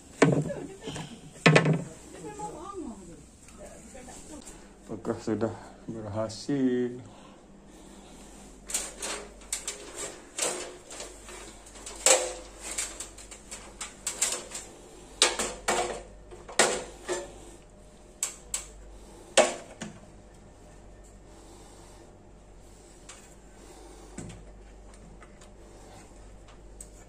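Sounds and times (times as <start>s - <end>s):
wooden boards knocking and clattering: 0.2s - 0.6s, 1.4s - 1.9s.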